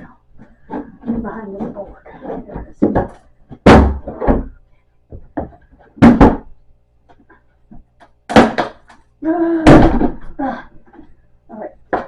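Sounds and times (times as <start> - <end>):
wooden knocks and thuds: 0.4 - 6.5.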